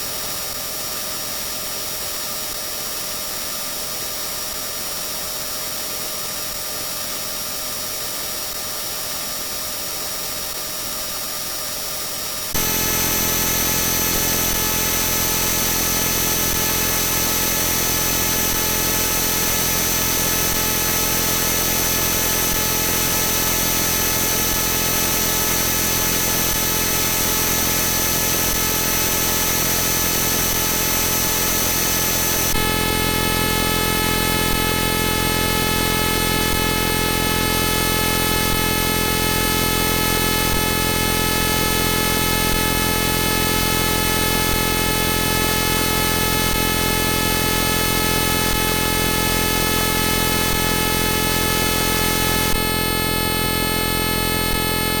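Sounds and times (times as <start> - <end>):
harsh electronic drone: 12.6 - 55.0.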